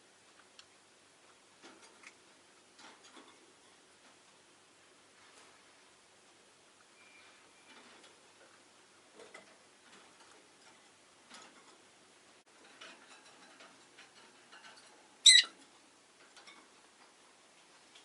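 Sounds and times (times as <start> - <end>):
faint ticking and clicking: 0.2 - 7.0, 7.7 - 18.0
bird shrill chirp: 15.2 - 15.5.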